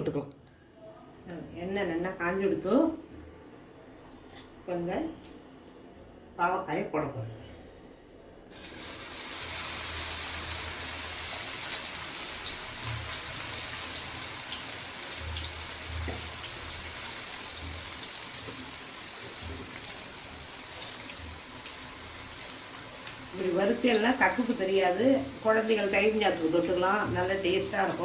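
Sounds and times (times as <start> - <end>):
food sizzling in hot oil: 8.5 - 28.0.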